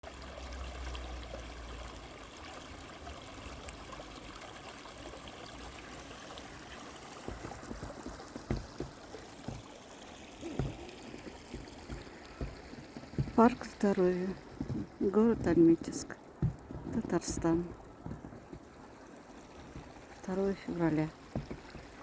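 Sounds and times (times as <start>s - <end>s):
stream trickling: 0.0s - 22.0s
dull low thumps: 10.4s - 18.8s.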